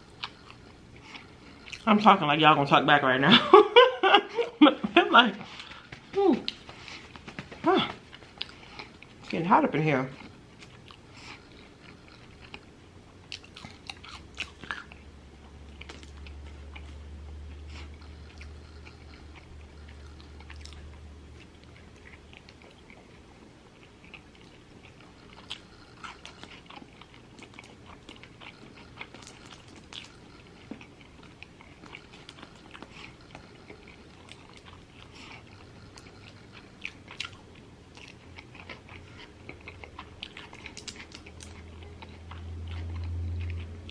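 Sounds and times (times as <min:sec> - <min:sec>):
wet chewing and biting: 0:00.0 - 0:01.9, 0:05.4 - 0:09.4, 0:10.1 - 0:43.9
low hum: 0:10.2 - 0:43.9.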